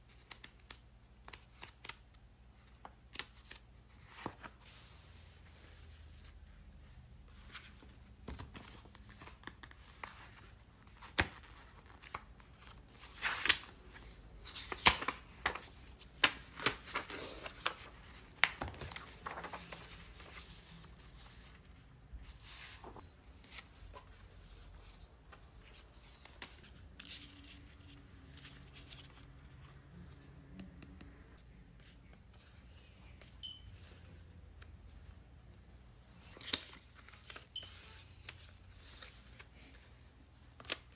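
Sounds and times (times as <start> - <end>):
light taps and clicks of paper: 18.4 - 19.8.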